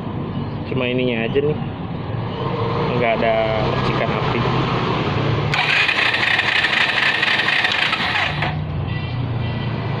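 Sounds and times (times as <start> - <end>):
electric starter cranking engine: 5.5 - 8.6.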